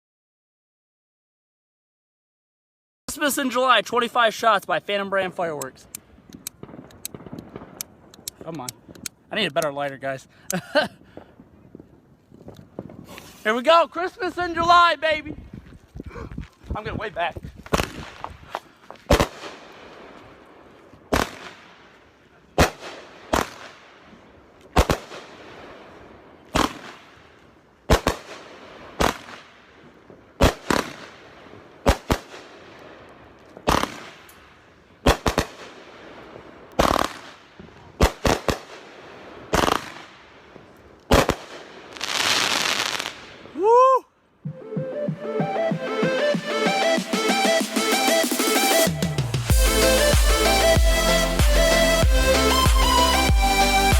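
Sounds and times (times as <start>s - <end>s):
firework bangs: 5.7s - 10.0s, 17.6s - 34.3s, 35.0s - 43.6s.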